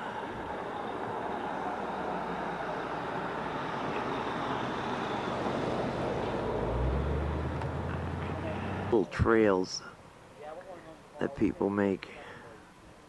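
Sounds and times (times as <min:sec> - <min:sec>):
tyre and road noise: 0:00.0 - 0:09.4
low engine hum: 0:00.2 - 0:09.1.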